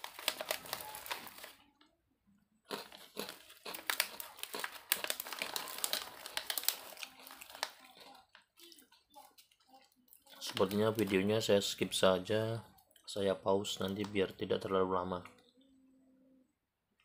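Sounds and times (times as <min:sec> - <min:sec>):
crinkling and crackling: 0:00.0 - 0:01.9, 0:02.7 - 0:14.4.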